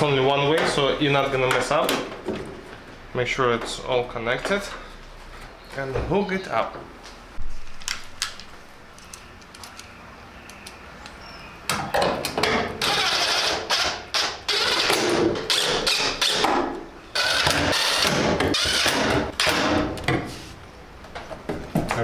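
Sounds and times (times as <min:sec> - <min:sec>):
power driver driving screws: 0:12.4 - 0:16.6, 0:17.2 - 0:19.9.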